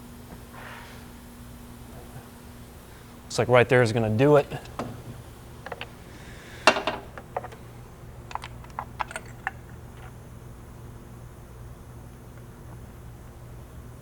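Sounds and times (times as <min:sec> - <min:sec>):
steady low hum: 0:00.0 - 0:14.0
hand tools clicking and clinking: 0:06.6 - 0:07.6, 0:08.3 - 0:10.2.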